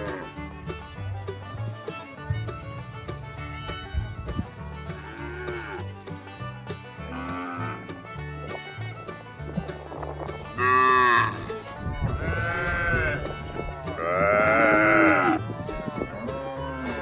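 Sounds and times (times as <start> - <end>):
cattle mooing: 0.0 - 0.4, 5.0 - 5.8, 7.0 - 7.9, 10.6 - 11.4, 12.2 - 13.2, 14.0 - 15.4, 16.2 - 17.0.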